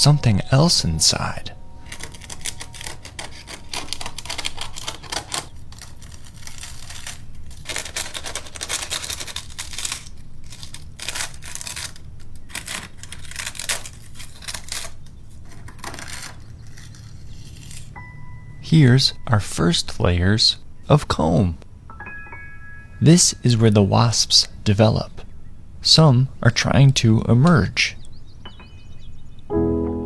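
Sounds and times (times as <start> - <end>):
paper wasp nest crackling and tearing: 0.0 - 18.0.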